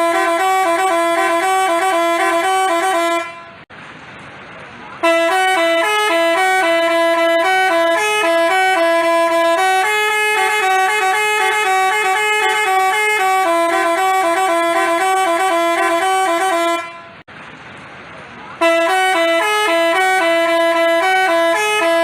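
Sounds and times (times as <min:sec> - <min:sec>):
bus musical horn tune: 0:00.0 - 0:03.7, 0:05.0 - 0:17.3, 0:18.6 - 0:22.0.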